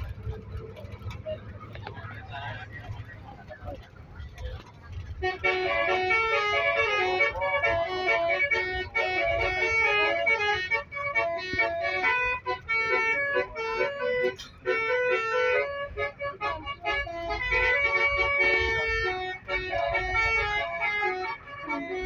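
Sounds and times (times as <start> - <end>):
bus horn playing a tune: 5.0 - 22.0.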